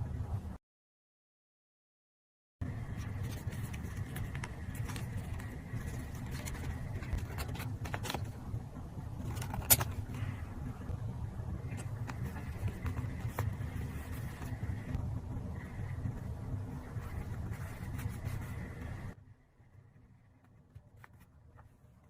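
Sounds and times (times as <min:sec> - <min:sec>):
low background rumble: 0:00.0 - 0:00.6, 0:02.6 - 0:22.0
paper and tools tapping and rustling: 0:03.0 - 0:08.4.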